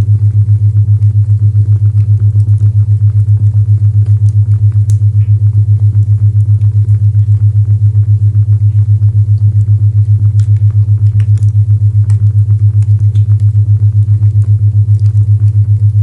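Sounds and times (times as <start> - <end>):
pulsing low tone: 0.0 - 16.0.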